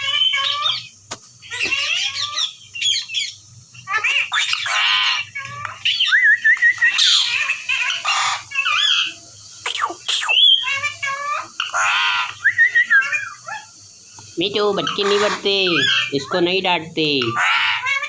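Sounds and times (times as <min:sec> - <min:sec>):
parrot squawking and chattering: 0:01.5 - 0:13.7, 0:14.5 - 0:16.6, 0:17.2 - 0:18.0
parrot wavering whistle: 0:04.0 - 0:05.3, 0:05.9 - 0:07.4, 0:08.0 - 0:11.2, 0:11.8 - 0:13.6.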